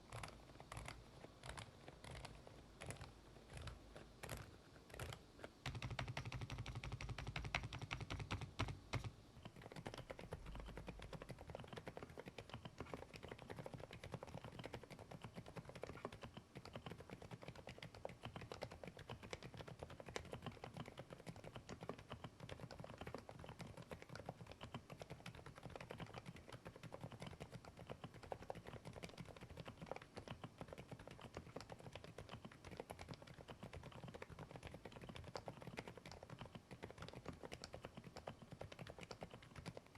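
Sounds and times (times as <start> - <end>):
rapid typing on keyboard: 0.0 - 39.9.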